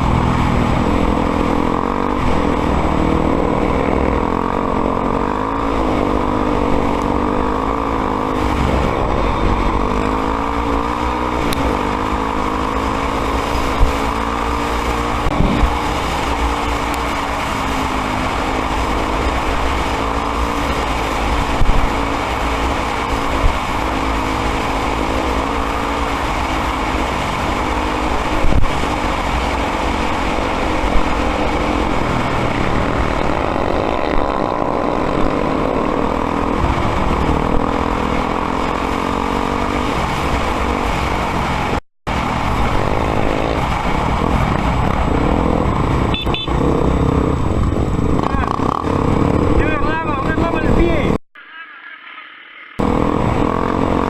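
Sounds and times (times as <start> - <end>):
motorcycle engine revving: 0.0 - 51.2, 52.8 - 54.0.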